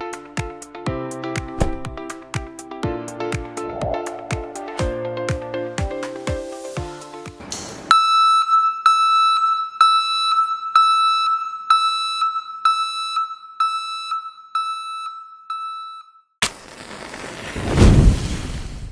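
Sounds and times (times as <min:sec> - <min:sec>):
reversing alarm beeping: 0:08.0 - 0:16.1.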